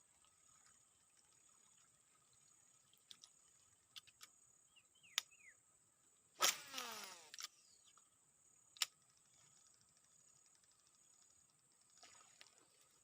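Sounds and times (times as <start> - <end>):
fishing reel spool whirring: 6.4 - 7.9, 9.0 - 12.7.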